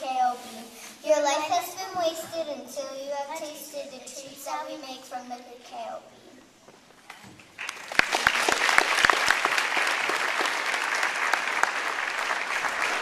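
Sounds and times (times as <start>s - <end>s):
audience applauding: 7.5s - 13.0s.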